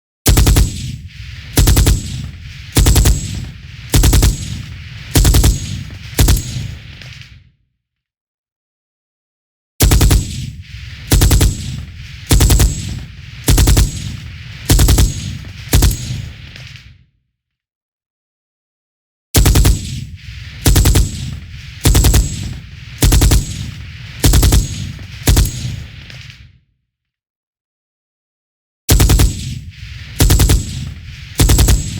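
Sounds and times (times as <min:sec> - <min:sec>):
machine gun firing bursts: 0:00.3 - 0:07.2, 0:09.8 - 0:16.8, 0:19.4 - 0:26.2, 0:28.9 - 0:31.9.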